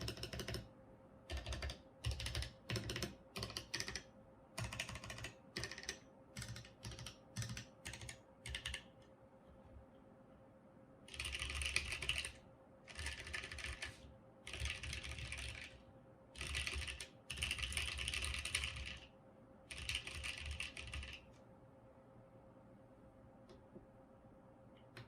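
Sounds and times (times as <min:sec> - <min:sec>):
mechanical keyboard typing: 0:00.0 - 0:00.7, 0:01.3 - 0:08.9, 0:11.1 - 0:15.8, 0:16.4 - 0:19.1, 0:19.7 - 0:21.3.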